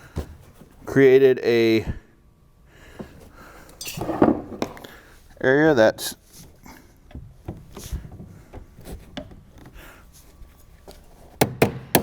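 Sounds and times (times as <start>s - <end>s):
rubbing and handling noises: 6.1s - 11.4s.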